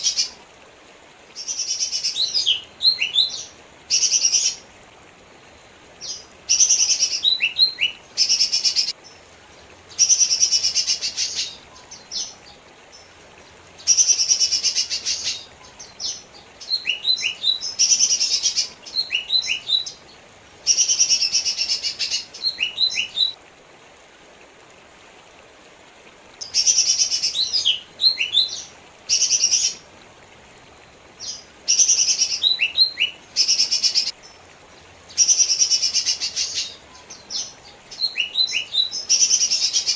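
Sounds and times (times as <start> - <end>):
leafbird singing: 1.4 - 4.6, 6.0 - 9.2, 9.9 - 13.1, 13.8 - 20.0, 20.7 - 23.4, 26.4 - 29.8, 31.2 - 34.4, 35.1 - 39.9.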